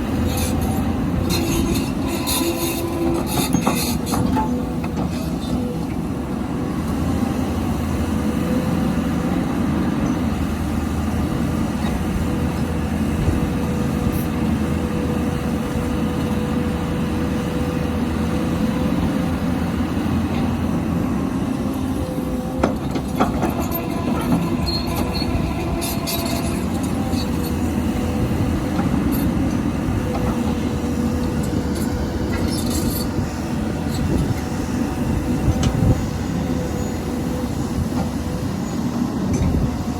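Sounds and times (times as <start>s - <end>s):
excavator diesel engine under load: 0.0s - 39.9s
hydraulic whine: 0.0s - 39.9s
high metal squeals: 0.2s - 5.7s, 23.4s - 27.8s.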